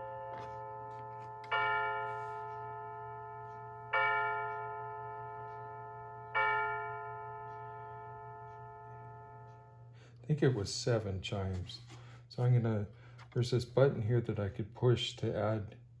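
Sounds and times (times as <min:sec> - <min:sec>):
clock bell-like strokes: 0:00.0 - 0:11.4.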